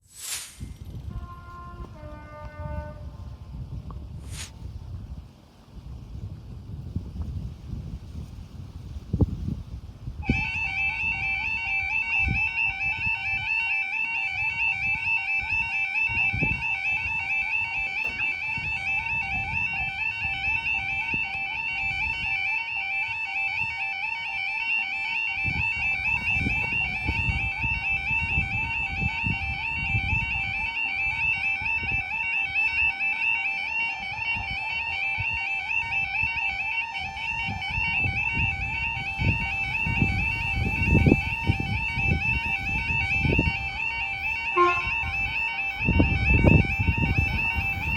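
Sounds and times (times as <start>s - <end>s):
warbling two-tone crossing alarm: 10.2s - 47.9s.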